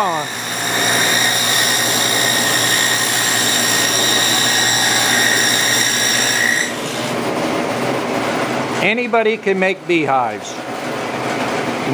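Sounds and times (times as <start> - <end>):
power saw whining: 0.0 - 7.2.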